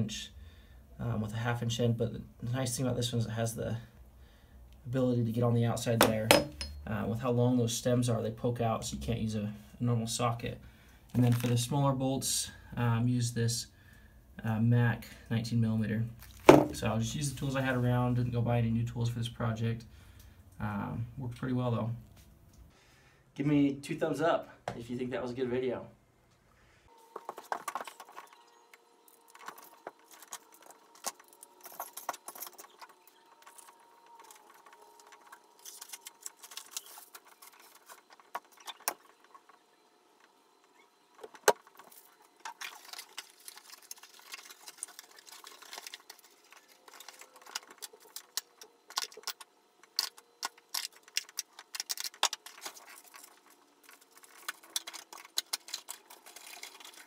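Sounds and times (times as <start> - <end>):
metallic clinks and rattles: 29.4 - 34.3.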